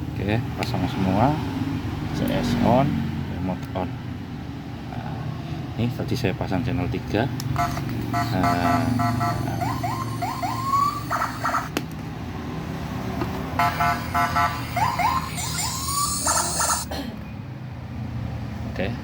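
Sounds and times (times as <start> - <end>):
electronic horn beeps and whoops: 7.6 - 11.7, 13.6 - 16.9.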